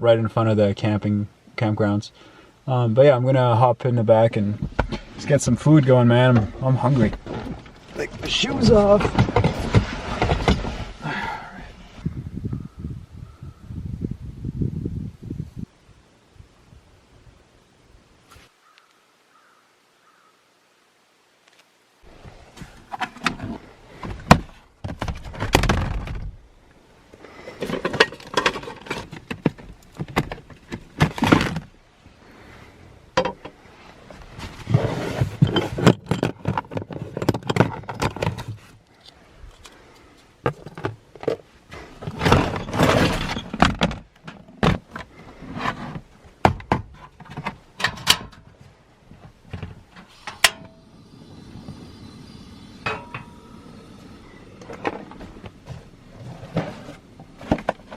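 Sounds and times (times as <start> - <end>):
rustling and scraping: 4.3 - 12.1, 18.2 - 18.6, 21.4 - 26.4, 27.2 - 57.9.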